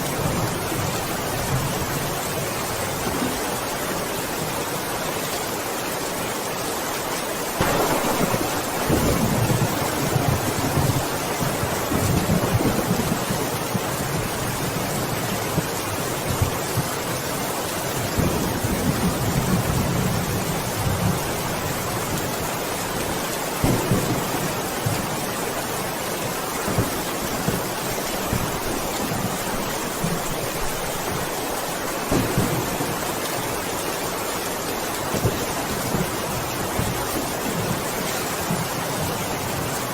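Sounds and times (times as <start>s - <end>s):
heavy rain: 0.0s - 39.9s
thunder rumbling: 7.6s - 15.7s, 23.6s - 31.4s, 32.0s - 33.8s.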